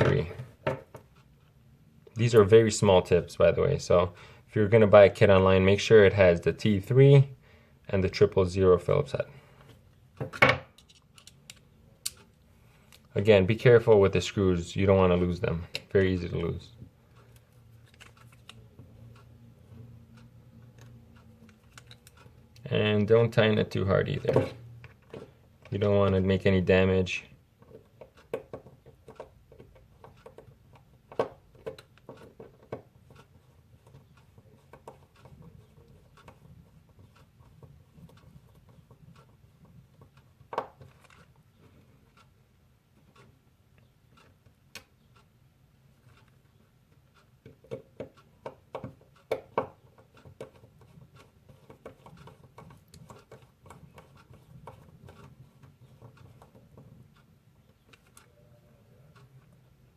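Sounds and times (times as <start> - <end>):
screwdriver clicking on tiny screws: 10.8 - 12.3, 20.7 - 22.7.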